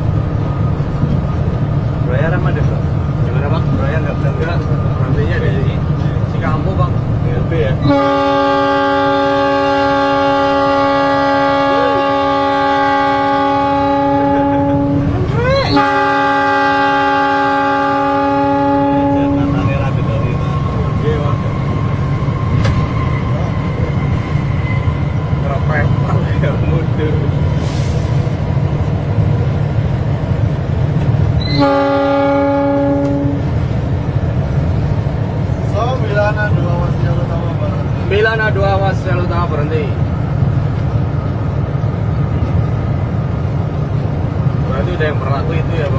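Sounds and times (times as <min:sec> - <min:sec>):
train rumbling: 0:00.0 - 0:45.9
locomotive air horn: 0:07.8 - 0:19.6, 0:31.4 - 0:33.5.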